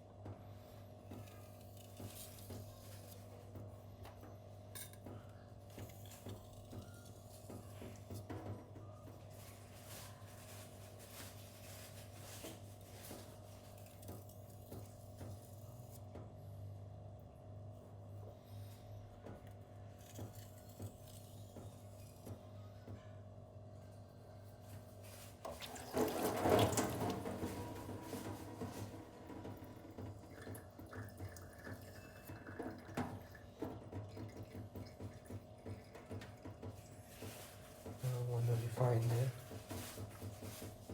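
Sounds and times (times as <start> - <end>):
faint water dripping: 30.0 - 36.5.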